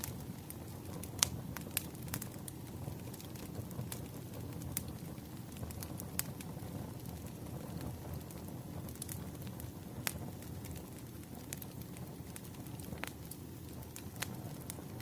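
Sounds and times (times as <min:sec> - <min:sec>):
fire crackling and popping: 0:00.0 - 0:15.0
wood fire rumbling: 0:00.0 - 0:15.0.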